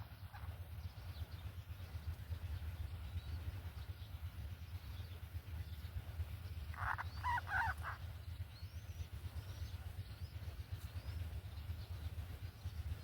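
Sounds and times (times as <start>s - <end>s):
steady low hum: 0.0s - 13.0s
bird harsh call: 6.7s - 8.0s.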